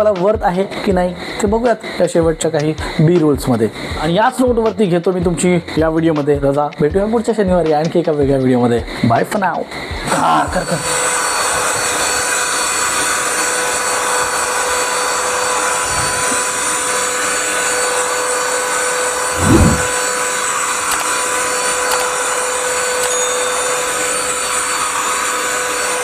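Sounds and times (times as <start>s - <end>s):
mini vacuum cleaner whining: 10.1s - 26.0s
low thump: 19.4s - 19.9s.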